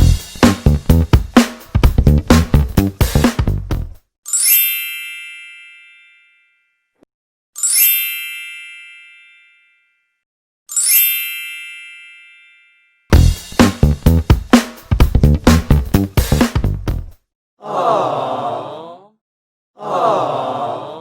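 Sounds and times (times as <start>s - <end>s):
bright bell-like ding: 4.3s - 6.8s, 7.6s - 10.0s.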